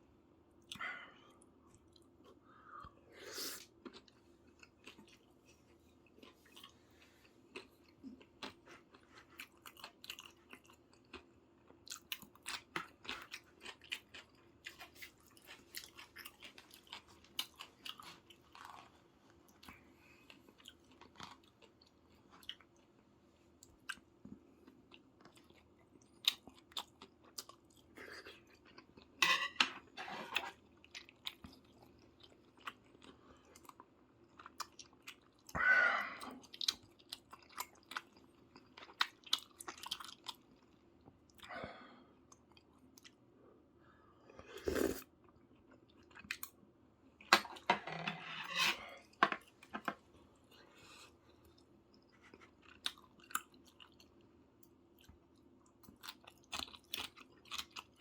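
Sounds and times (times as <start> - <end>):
faint steady hum: 0.0 - 58.0
chewing and biting food: 7.4 - 18.9, 36.4 - 41.4, 51.4 - 54.2, 55.0 - 58.0.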